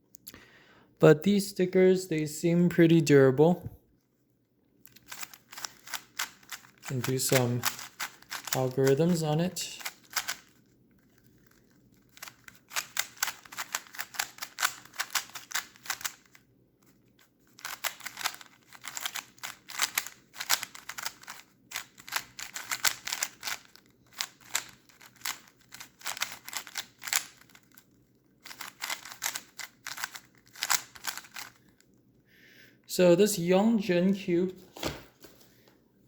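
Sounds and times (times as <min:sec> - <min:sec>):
puzzle cube turning clicks: 0:04.9 - 0:16.4, 0:17.5 - 0:31.9.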